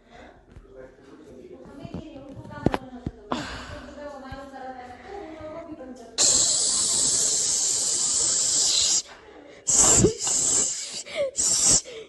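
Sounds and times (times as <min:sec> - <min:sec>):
loud steady hiss: 0:06.2 - 0:09.1, 0:09.7 - 0:11.9.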